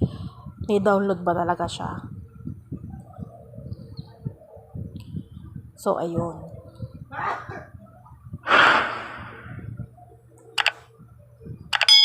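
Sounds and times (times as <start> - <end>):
loud whoosh: 8.5 - 9.5.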